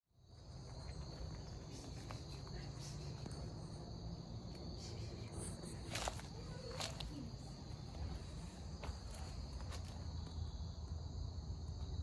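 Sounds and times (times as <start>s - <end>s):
insects chirring: 0.1s - 12.0s.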